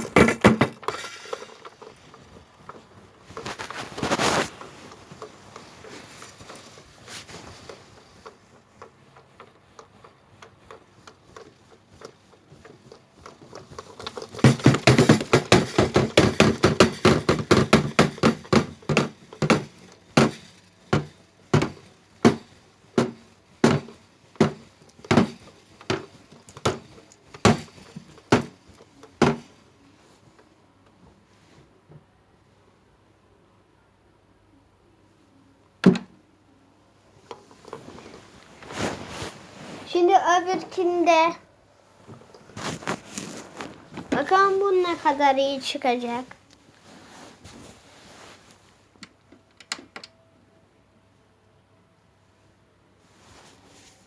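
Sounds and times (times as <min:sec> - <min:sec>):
drum banging against cabinet: 0:14.4 - 0:28.6, 0:29.2 - 0:29.5.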